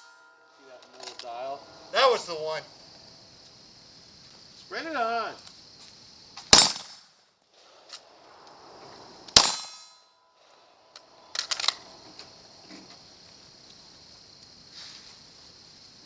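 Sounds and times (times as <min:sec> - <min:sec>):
metallic ring: 0:00.0 - 0:03.0, 0:09.4 - 0:12.0
gunshot: 0:06.5 - 0:07.2, 0:09.3 - 0:10.0.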